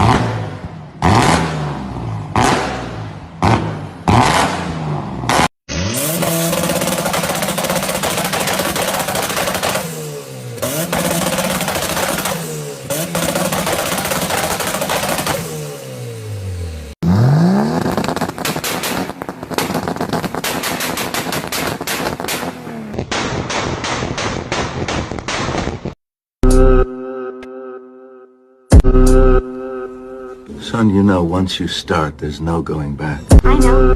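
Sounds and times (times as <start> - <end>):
car engine revving: 0.0 - 23.0
exhaust pops and crackles: 6.1 - 10.0, 10.6 - 15.5, 17.5 - 26.0.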